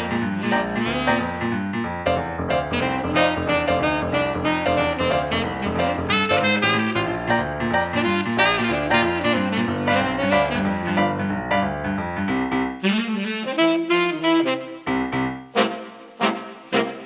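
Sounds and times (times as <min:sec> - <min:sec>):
saxophone: 0:00.0 - 0:01.8, 0:02.6 - 0:11.8, 0:12.7 - 0:17.0
walking bass line: 0:00.0 - 0:12.7
piano: 0:00.0 - 0:17.0.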